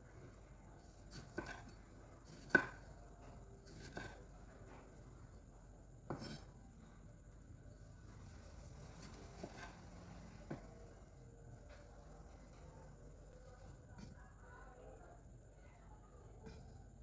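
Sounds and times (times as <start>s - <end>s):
knife chopping on cutting board: 1.1s - 2.9s, 3.6s - 4.2s, 6.1s - 6.5s.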